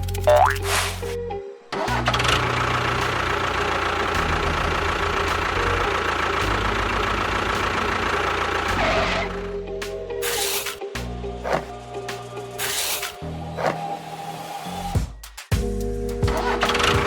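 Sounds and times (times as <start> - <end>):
engine idling: 1.8 - 9.8, 16.2 - 17.0.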